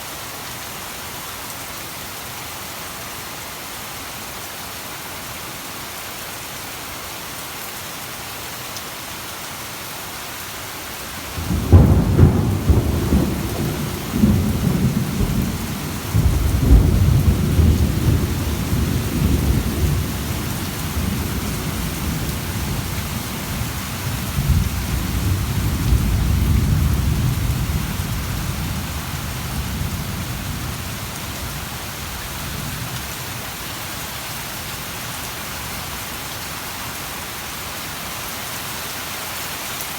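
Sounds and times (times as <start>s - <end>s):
steady rain falling: 0.0s - 39.9s
thunder rumbling: 11.3s - 32.8s.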